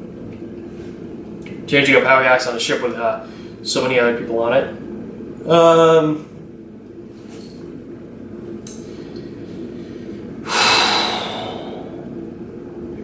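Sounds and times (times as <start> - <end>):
low room hum: 0.0 - 13.0
person breathing loudly: 9.8 - 12.2.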